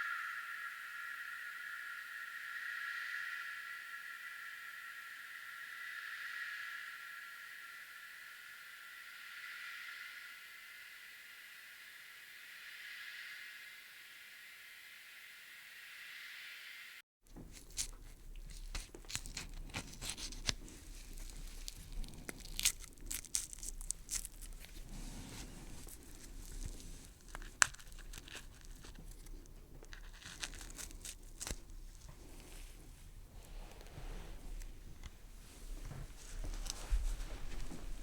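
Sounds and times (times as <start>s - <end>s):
flesh tearing and crunching: 17.3s - 32.1s.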